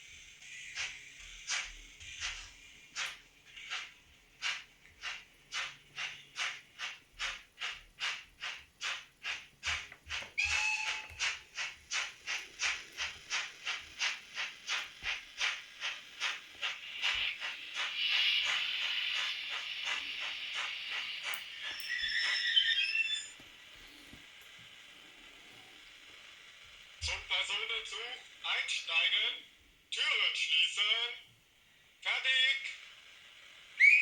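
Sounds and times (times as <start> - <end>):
steam hiss: 0.0 - 28.8
model steam locomotive chuffs: 0.0 - 31.1, 31.8 - 34.0.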